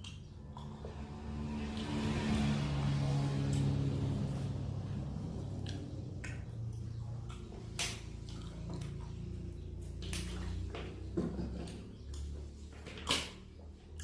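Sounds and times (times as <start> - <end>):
low steady hum: 0.0 - 14.0
person chewing crunchy food: 5.2 - 9.5.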